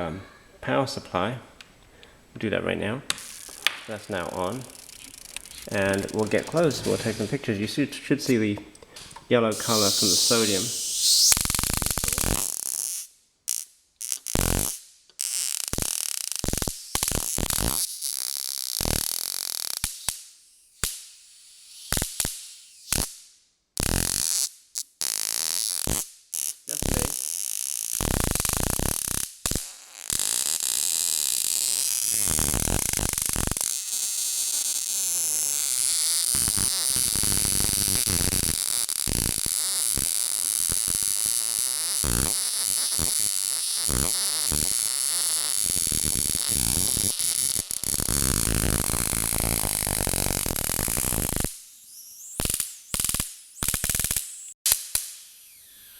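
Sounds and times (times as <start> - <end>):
electric sparks crackling in water: 3.2 - 7.4, 9.5 - 23.1, 23.8 - 51.6, 52.3 - 55.2.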